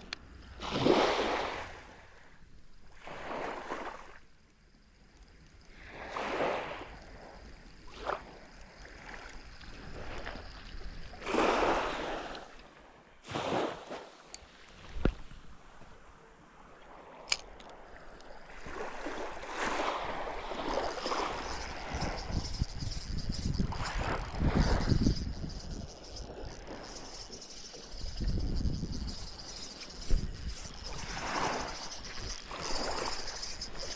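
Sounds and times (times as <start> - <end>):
sharp clicks: 20.8 - 33.9.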